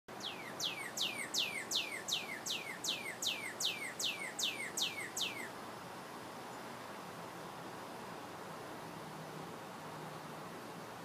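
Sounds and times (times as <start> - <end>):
bird chirping falling notes: 0.2 - 5.5.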